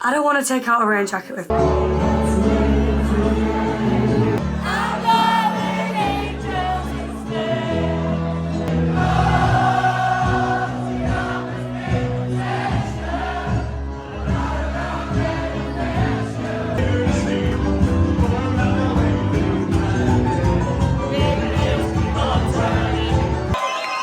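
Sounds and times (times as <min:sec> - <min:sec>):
bass line: 0:01.5 - 0:23.6
choir-like singing: 0:01.5 - 0:24.0.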